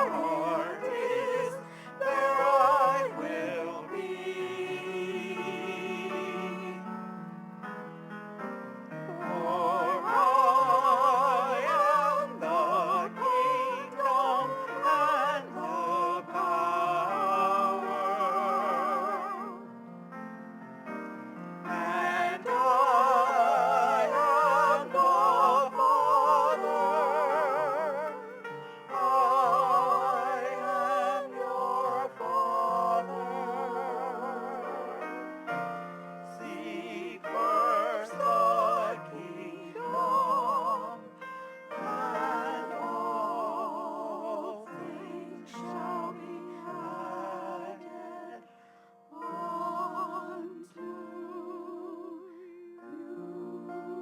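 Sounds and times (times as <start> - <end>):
piano accompaniment: 0.0 - 48.4
person singing with vibrato: 9.1 - 19.7.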